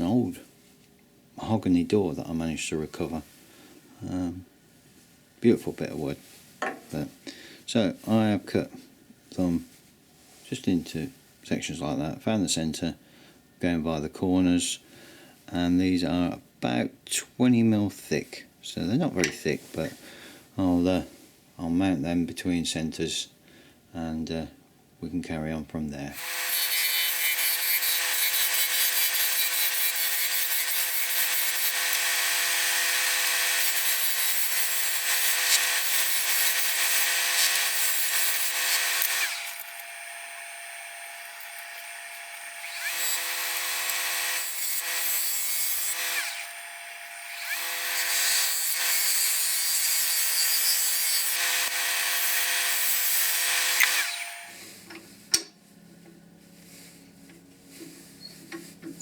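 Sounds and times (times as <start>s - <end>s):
turning tool cutting wood: 26.2s - 54.5s.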